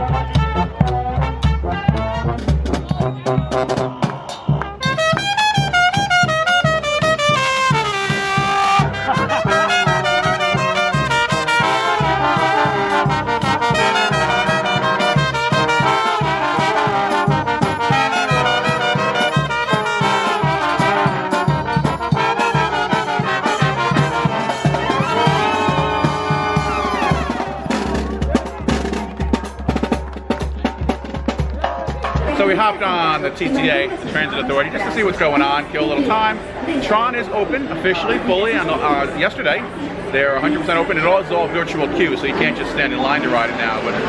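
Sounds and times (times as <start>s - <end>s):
brass band playing: 0.0s - 36.1s.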